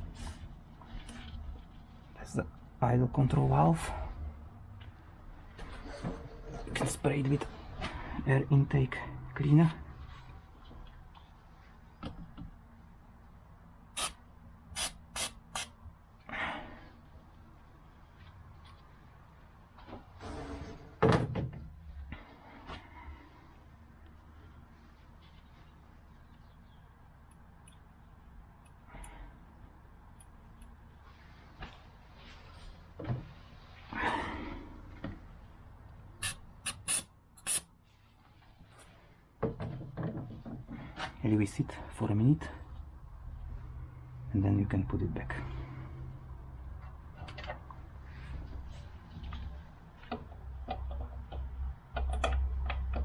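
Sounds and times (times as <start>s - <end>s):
aerosol spray bursts: 14.0s - 14.2s, 14.8s - 15.7s, 36.2s - 37.6s
sharp clicks of tools: 36.2s - 37.6s.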